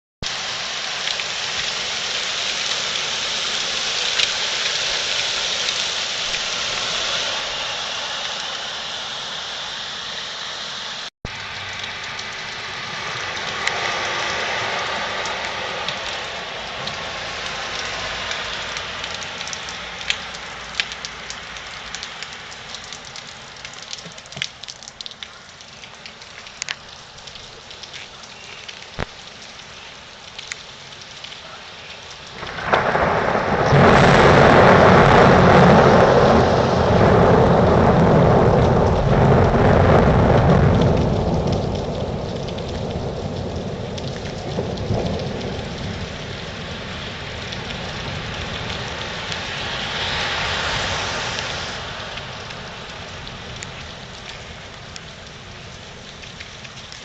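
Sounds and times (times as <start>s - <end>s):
hail pattering: 11.3s - 49.9s
thunder rumble: 32.3s - 53.4s.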